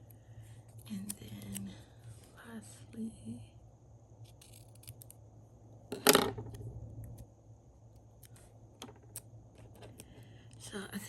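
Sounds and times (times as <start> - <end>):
supplies clattering on a desk: 5.9 - 6.5.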